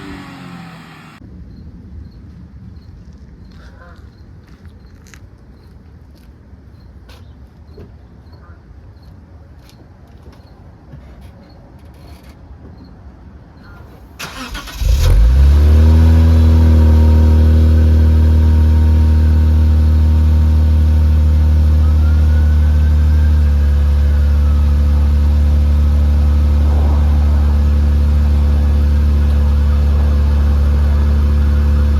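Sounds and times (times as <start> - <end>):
car engine cranking: 14.2 - 31.9
car engine idling: 14.2 - 31.9.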